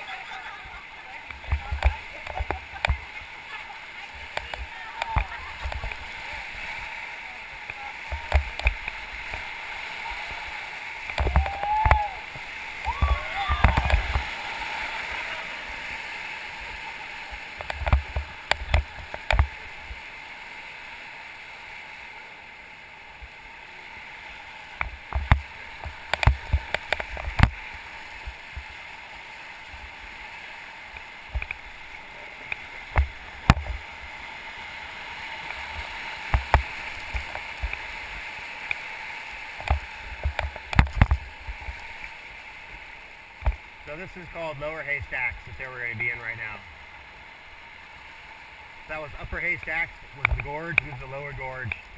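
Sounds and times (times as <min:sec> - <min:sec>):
river water rushing: 0:00.0 - 0:51.9.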